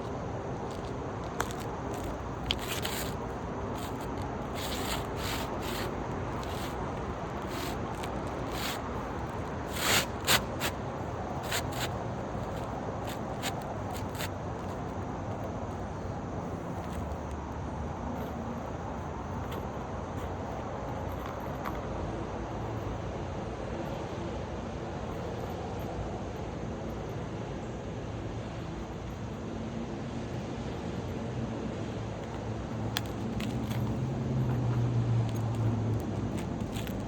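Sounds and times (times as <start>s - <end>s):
steady outdoor rush: 0.0s - 18.3s, 31.8s - 37.0s
hands scraping roof shingles: 0.7s - 14.9s, 32.9s - 37.0s.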